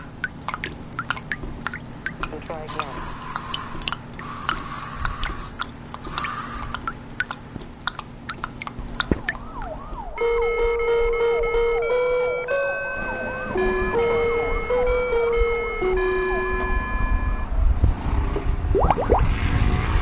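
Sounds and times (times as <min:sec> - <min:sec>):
clicks and drips: 0:00.0 - 0:12.0, 0:18.7 - 0:19.3
faint steady hum: 0:00.0 - 0:17.6
siren-like electronic tone: 0:09.3 - 0:17.5.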